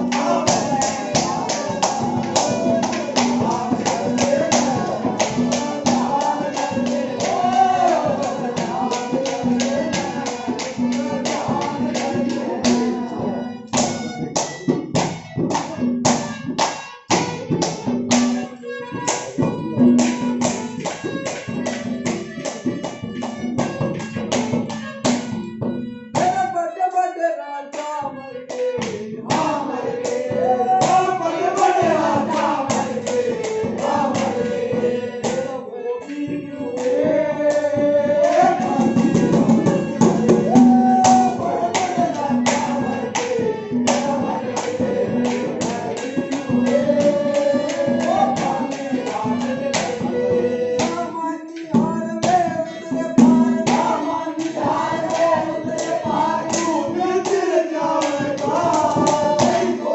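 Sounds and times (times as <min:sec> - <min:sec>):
person singing: 0:00.0 - 0:16.3, 0:26.1 - 0:59.9
instrumental backing: 0:00.0 - 0:59.9
drum strokes: 0:36.8 - 0:50.1.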